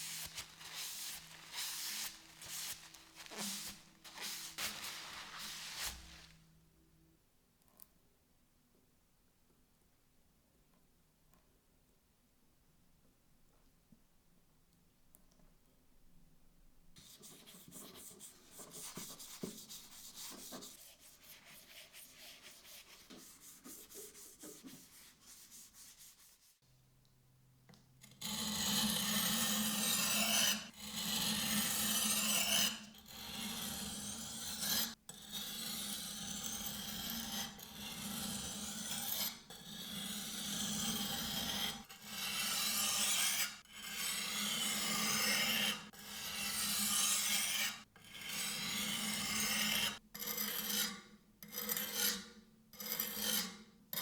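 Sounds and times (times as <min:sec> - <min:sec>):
loud rasping strokes: 0:00.0 - 0:06.3
light rubbing: 0:00.0 - 0:06.4, 0:17.7 - 0:26.6.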